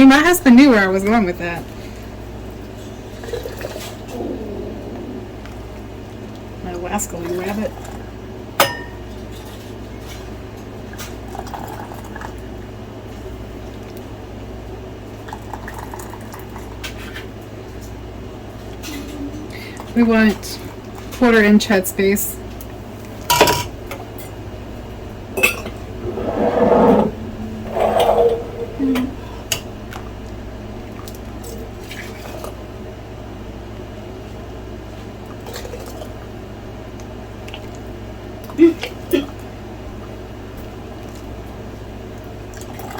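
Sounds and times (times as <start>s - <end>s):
steady low hum: 4.0s - 8.2s, 18.2s - 31.8s.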